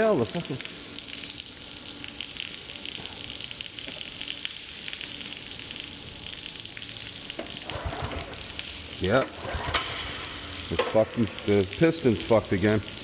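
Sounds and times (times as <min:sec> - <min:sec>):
high-pressure water hissing: 0:07.4 - 0:13.0.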